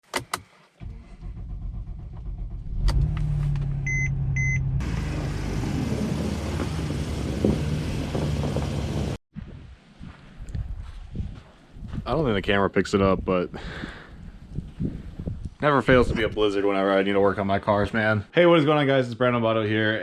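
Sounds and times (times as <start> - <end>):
car engine rumbling: 0.8 - 9.2
short electronic beeps: 3.9 - 4.7.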